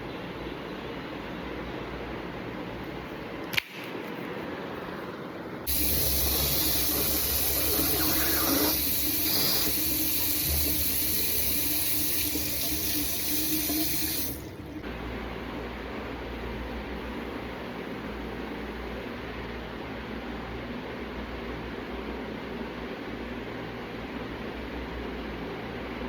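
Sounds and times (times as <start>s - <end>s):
tap water running into sink: 5.7s - 14.8s.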